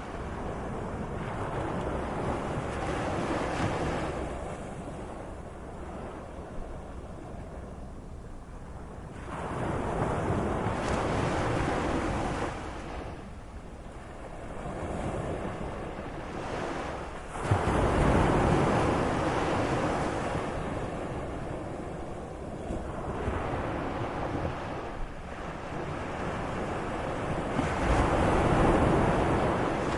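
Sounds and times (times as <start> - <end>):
sea waves washing in: 0.0 - 29.9.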